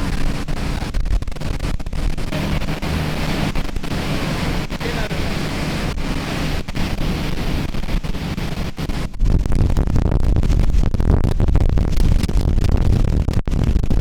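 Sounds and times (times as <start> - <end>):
rushing water: 0.0 - 9.7
low rumble: 0.0 - 14.0
wind buffeting microphone: 0.0 - 14.0.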